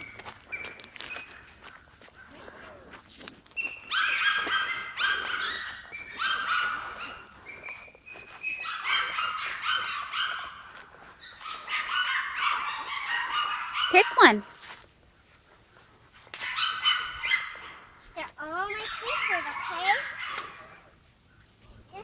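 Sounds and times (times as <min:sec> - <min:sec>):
small dog yapping: 0:03.6 - 0:14.5, 0:16.4 - 0:17.8, 0:18.6 - 0:20.8.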